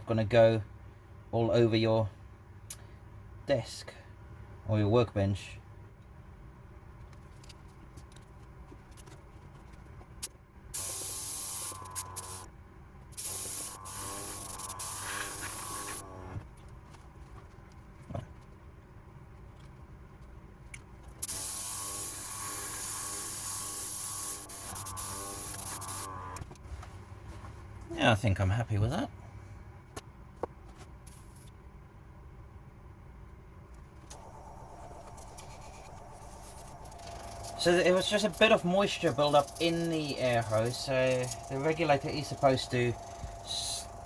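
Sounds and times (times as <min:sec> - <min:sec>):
airbrush spraying hiss: 0:10.8 - 0:12.5, 0:13.2 - 0:16.0, 0:21.2 - 0:26.1, 0:34.1 - 0:44.0
small compressor humming: 0:10.8 - 0:12.5, 0:13.1 - 0:16.4, 0:21.2 - 0:26.4, 0:34.0 - 0:44.0.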